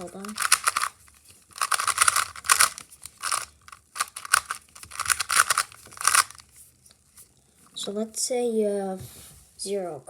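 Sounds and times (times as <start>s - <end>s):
plastic puzzle cube clicking: 0.0s - 6.4s.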